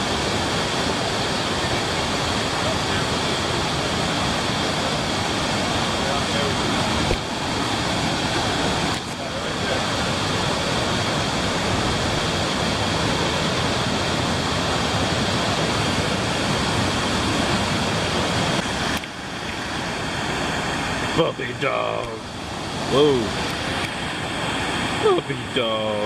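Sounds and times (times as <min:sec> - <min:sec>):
waterfall rushing: 0:00.0 - 0:26.0.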